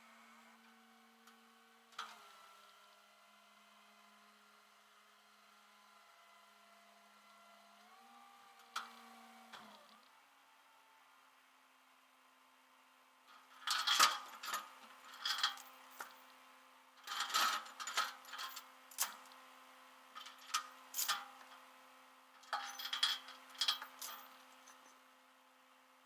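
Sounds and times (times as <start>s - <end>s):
metallic clinking and rattling: 13.6s - 16.2s, 17.1s - 19.2s, 22.4s - 25.0s.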